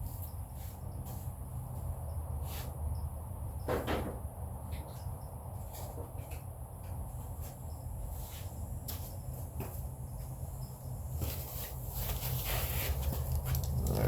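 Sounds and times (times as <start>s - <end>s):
steady low hum: 6.6s - 14.0s
hand tools clicking and tapping: 13.2s - 14.0s.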